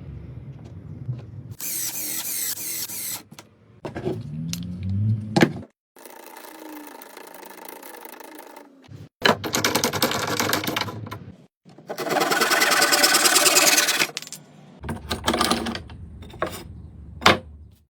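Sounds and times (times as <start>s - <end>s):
power tool rattling on wood: 11.9s - 14.3s.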